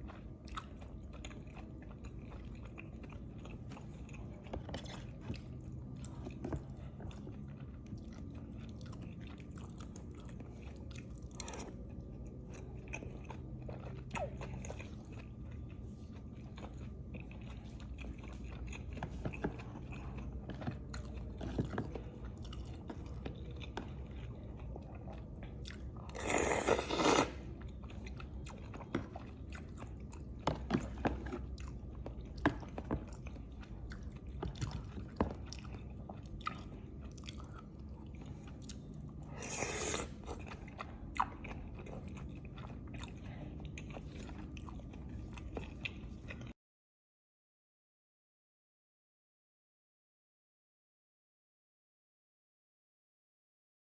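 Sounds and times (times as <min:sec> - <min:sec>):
person chewing food: 0:00.0 - 0:46.6.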